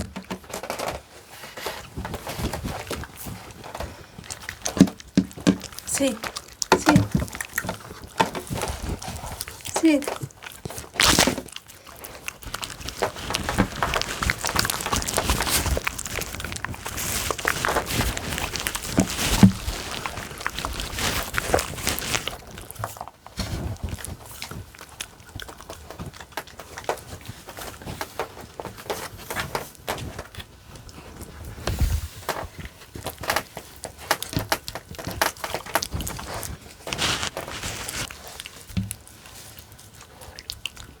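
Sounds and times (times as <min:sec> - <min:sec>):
dogs licking and chewing: 0:00.0 - 0:41.0
paws and bowl knocking: 0:03.8 - 0:09.1.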